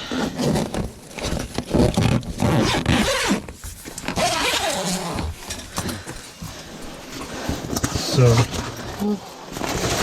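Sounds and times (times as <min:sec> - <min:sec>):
zip pulled open on canvas: 0:00.1 - 0:05.9.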